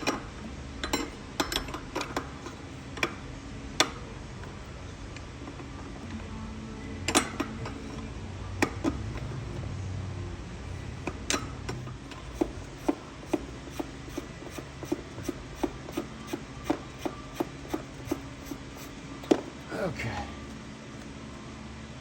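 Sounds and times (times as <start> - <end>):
ratchet wrench clicking: 11.3 - 19.4.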